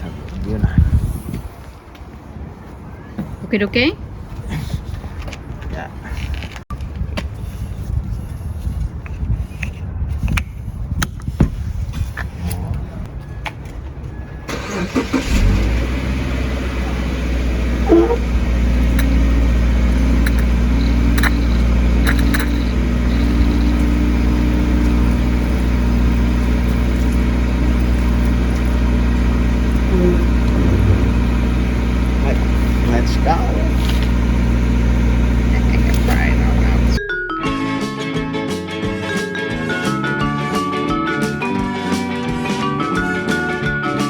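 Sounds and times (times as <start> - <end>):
car engine starting and idling: 14.4 - 37.0.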